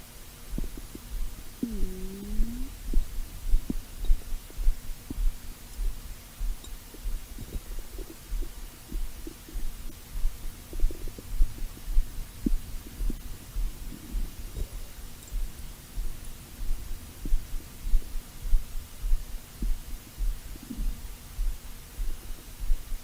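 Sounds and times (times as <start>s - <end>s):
low pulsing throb: 0.0s - 23.0s.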